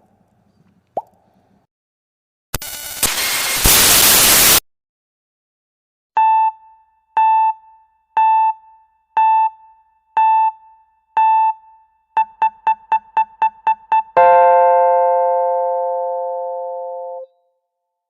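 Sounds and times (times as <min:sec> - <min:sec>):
electronic countdown beeps: 0:06.2 - 0:14.6
long held synth chord: 0:14.2 - 0:17.2.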